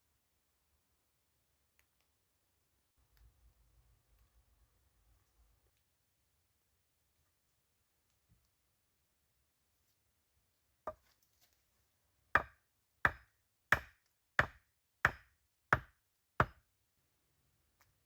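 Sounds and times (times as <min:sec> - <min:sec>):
wood being chopped: 0:12.4 - 0:16.6.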